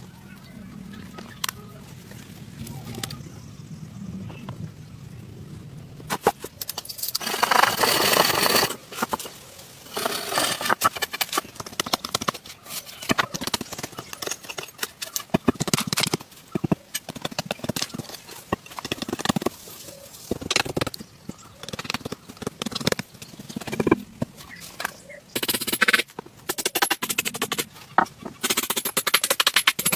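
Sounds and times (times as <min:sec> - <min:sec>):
rough scraping: 0:06.1 - 0:29.9.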